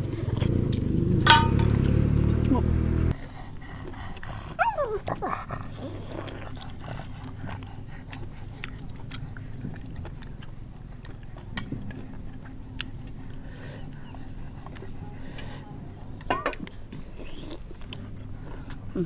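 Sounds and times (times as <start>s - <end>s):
dog chewing food: 3.1s - 13.4s
dog whining: 4.3s - 6.5s.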